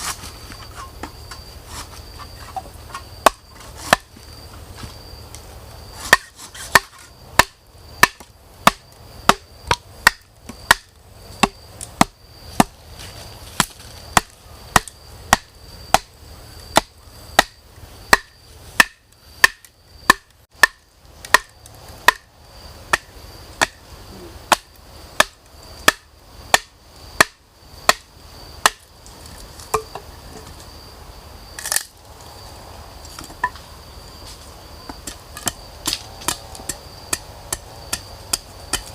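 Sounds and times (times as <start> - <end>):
wood being chopped: 2.9 - 4.2, 6.0 - 12.8, 13.5 - 16.1, 16.7 - 22.3, 22.9 - 23.8, 24.5 - 28.9, 29.7 - 30.1, 34.9 - 38.9.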